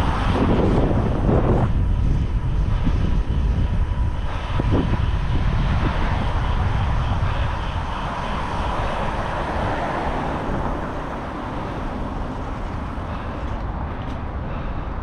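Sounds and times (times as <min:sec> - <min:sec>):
steady low rumble: 0:00.0 - 0:15.0
person breathing heavily: 0:12.8 - 0:15.0.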